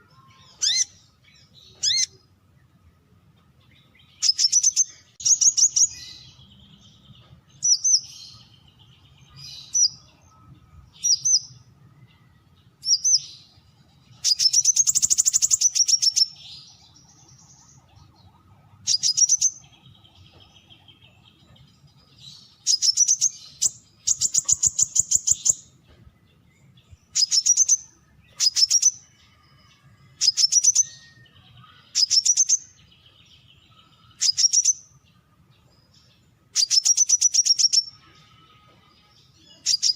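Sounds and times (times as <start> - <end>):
bird chirping: 0.0 - 39.9
bird trilling: 0.4 - 1.0, 1.8 - 2.2, 18.8 - 19.7, 22.6 - 25.6, 27.1 - 29.1, 30.2 - 30.9, 34.1 - 34.8.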